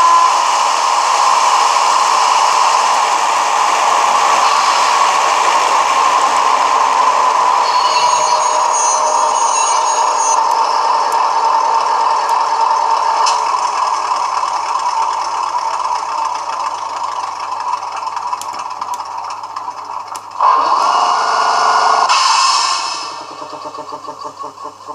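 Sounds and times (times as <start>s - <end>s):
diesel locomotive engine running: 0.0s - 24.9s
air hiss: 22.1s - 23.3s.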